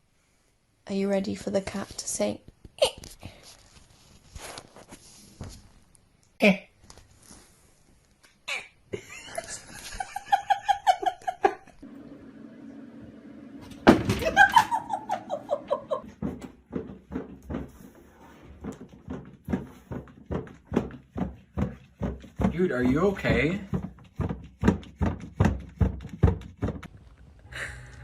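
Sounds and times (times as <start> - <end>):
person laughing: 8.5 - 11.8, 14.2 - 16.1.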